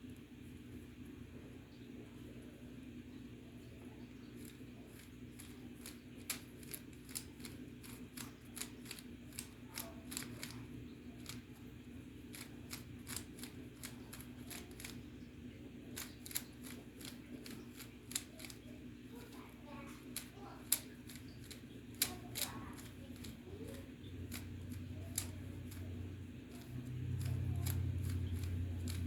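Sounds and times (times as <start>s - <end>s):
steady low hum: 0.0s - 29.0s
puzzle cube twisting clicks: 4.4s - 10.6s, 12.3s - 15.0s.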